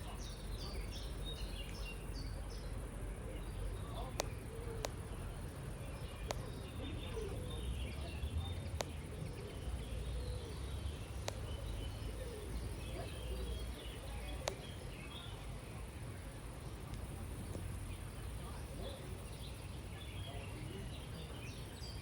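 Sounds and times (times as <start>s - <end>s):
birds chirping: 0.0s - 22.0s
low rumble of wind: 0.0s - 22.0s
sharp click: 4.1s - 5.0s, 11.2s - 11.5s.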